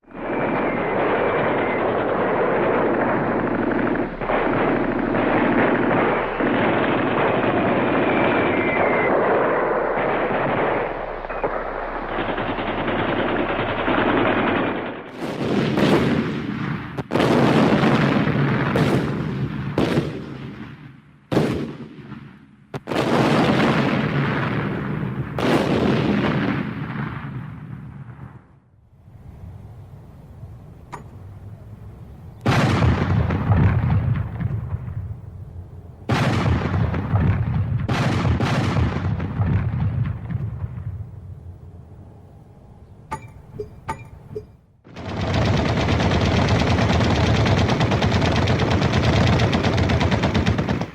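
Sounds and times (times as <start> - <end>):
loud echoing gunshots: 0.1 - 28.3, 32.4 - 35.2, 36.1 - 41.2, 44.9 - 50.9
rapid gunfire: 0.3 - 18.1, 36.1 - 39.4, 44.9 - 50.9.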